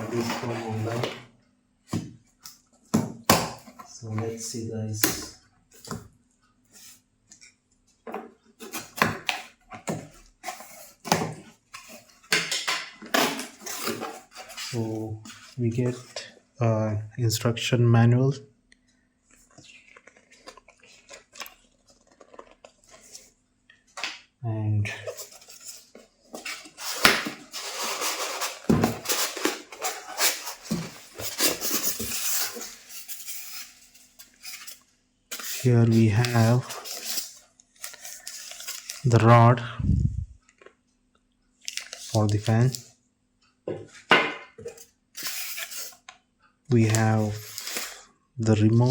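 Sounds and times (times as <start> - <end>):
packaging rustling: 8.6 - 16.2, 19.4 - 23.4, 25.0 - 39.1, 44.6 - 46.0, 46.9 - 48.0
packaging rustling and knocking: 25.1 - 35.6.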